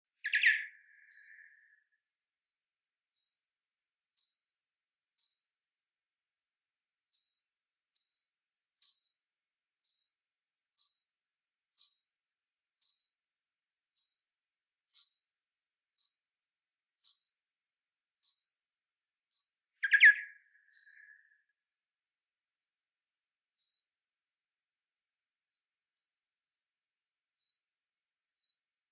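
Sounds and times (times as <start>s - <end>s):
bats chirping: 0.2s - 1.3s, 19.8s - 20.9s.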